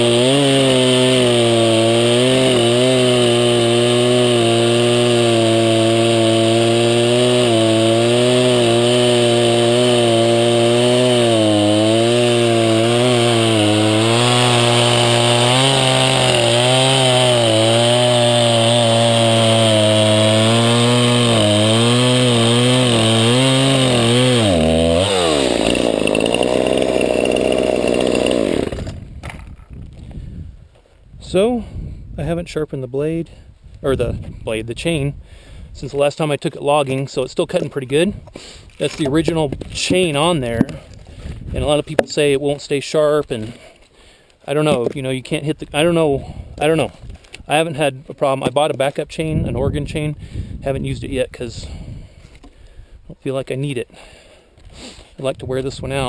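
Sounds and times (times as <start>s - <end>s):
chainsaw cutting through log: 0.0s - 29.2s.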